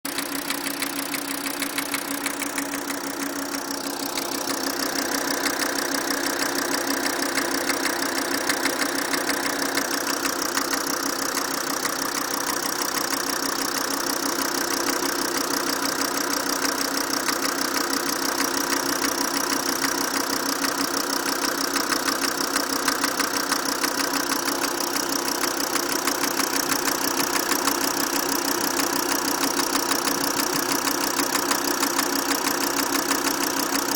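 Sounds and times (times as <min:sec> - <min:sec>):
rapid engine knock: 0:00.0 - 0:33.9
diesel engine clatter: 0:00.1 - 0:33.9.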